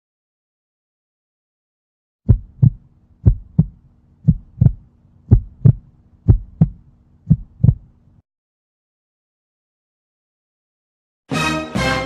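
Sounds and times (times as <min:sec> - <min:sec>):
heartbeat thumps: 0:02.3 - 0:08.0
faint steady hum: 0:02.3 - 0:08.2.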